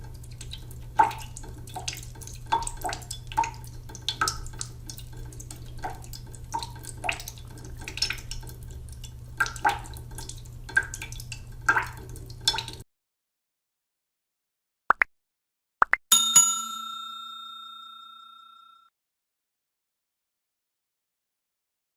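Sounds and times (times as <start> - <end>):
water trickling and dripping: 0.0 - 12.8
bell-like chime: 16.1 - 18.9.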